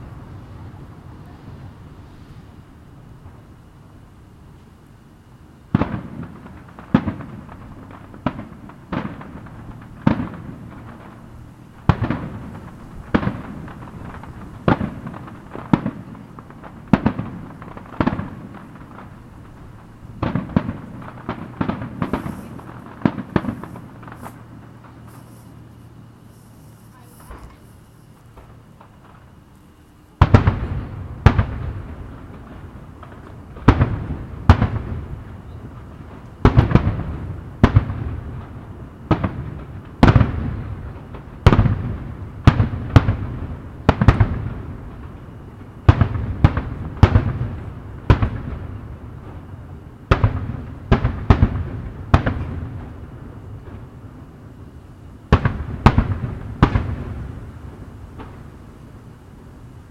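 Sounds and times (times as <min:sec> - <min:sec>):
fireworks bangs with echo: 0:05.6 - 0:29.4, 0:30.1 - 0:59.6.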